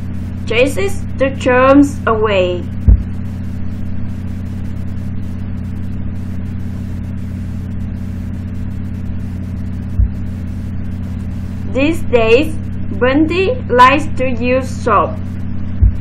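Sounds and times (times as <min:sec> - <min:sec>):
low mechanical hum: 0:00.0 - 0:16.0
short low thump: 0:02.8 - 0:03.2, 0:09.8 - 0:10.3, 0:15.7 - 0:16.0.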